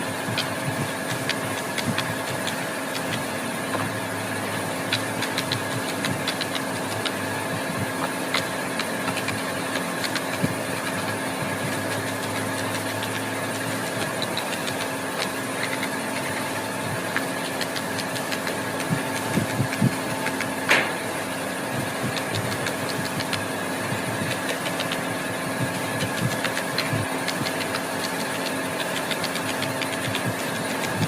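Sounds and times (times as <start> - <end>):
machine humming: 0.0 - 31.0
louder knocks: 20.7 - 21.1.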